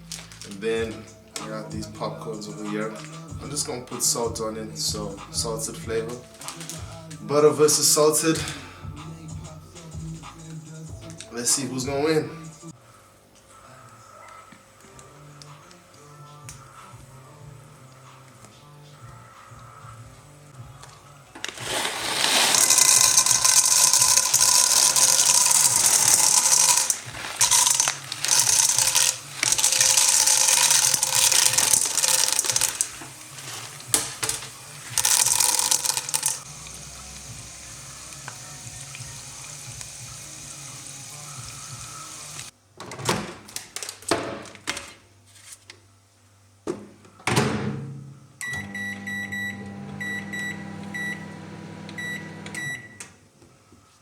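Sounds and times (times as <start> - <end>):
loud rustling hiss: 21.5 - 42.5
microwave oven beeps: 48.4 - 53.1.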